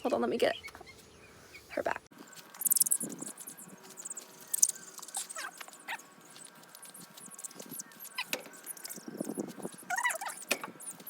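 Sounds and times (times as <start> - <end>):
scratchy rustling and patter: 1.7 - 11.0
chickens squeaky calls: 2.4 - 11.0.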